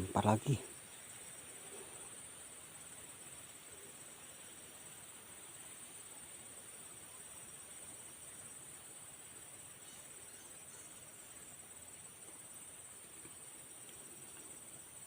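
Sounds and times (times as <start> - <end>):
insects trilling: 0.0 - 15.0
outdoor hiss: 0.0 - 15.0.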